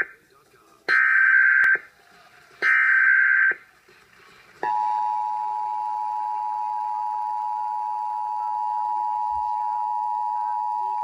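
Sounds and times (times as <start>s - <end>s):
two-tone attention signal: 4.6s - 11.0s.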